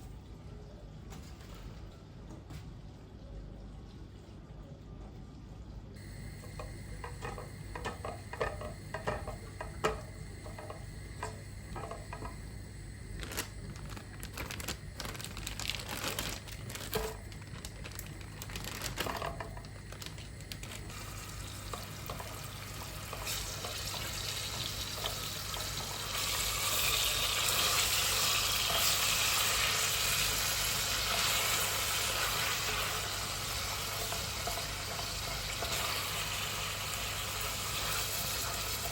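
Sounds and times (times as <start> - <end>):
low steady hum: 0.0 - 26.7
sizzling hiss: 6.0 - 38.9.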